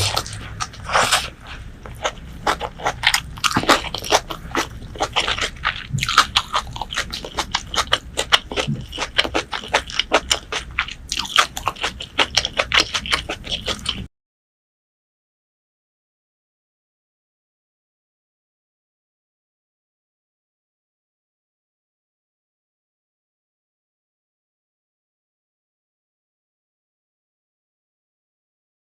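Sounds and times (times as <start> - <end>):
low hum: 0.0 - 14.1
person chewing crunchy food: 0.0 - 14.1.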